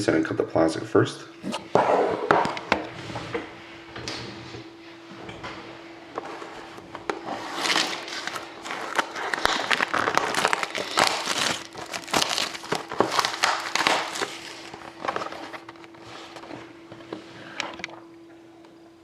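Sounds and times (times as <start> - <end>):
plastic wrap crinkling: 6.5 - 16.7.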